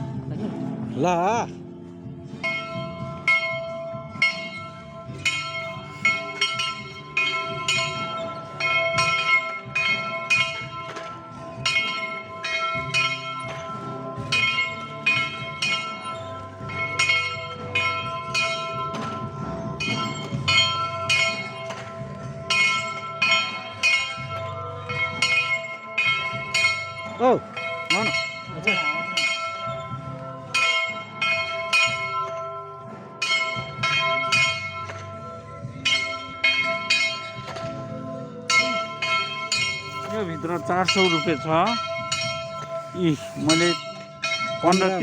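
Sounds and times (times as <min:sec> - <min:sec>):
church bell ringing: 0:02.4 - 0:37.8, 0:38.4 - 0:45.0.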